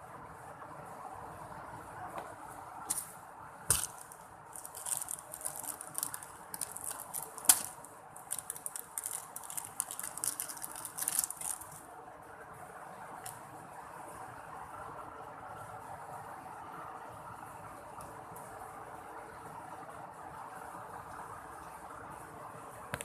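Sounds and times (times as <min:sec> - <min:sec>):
slime crackling and popping: 0:03.7 - 0:11.8.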